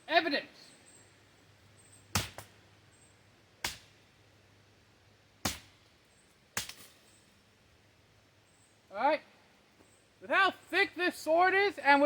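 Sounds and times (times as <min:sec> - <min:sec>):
sword blade chopping into wood: 0:02.1 - 0:02.5, 0:03.6 - 0:03.9, 0:05.4 - 0:05.7.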